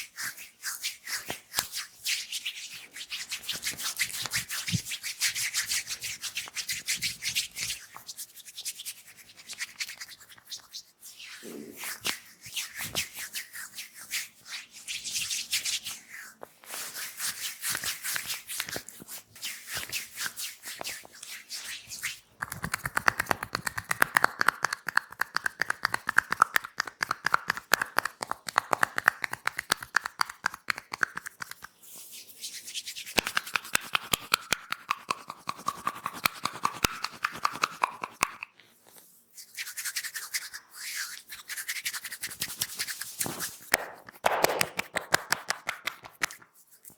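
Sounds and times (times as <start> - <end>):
skin rubbing on skin: 30.9 - 38.4, 39.0 - 46.9
tapping strokes on back: 43.7 - 46.2.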